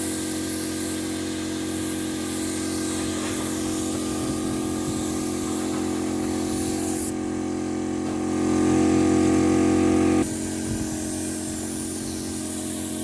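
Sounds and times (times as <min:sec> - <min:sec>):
paint spray gun hissing: 0:00.0 - 0:07.2, 0:10.2 - 0:13.0
machine humming: 0:00.8 - 0:13.0.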